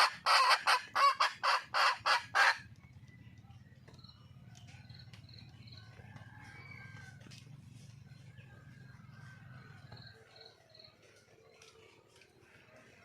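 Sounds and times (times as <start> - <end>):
junglefowl calling: 0.0 - 2.7.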